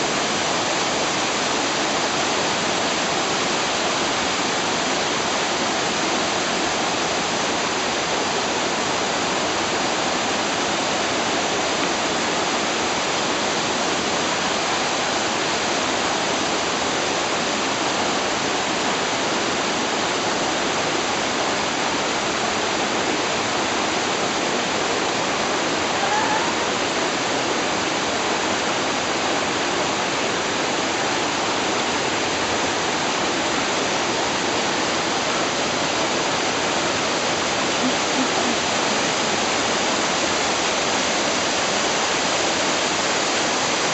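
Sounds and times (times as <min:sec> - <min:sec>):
waterfall rushing: 0:00.0 - 0:43.9.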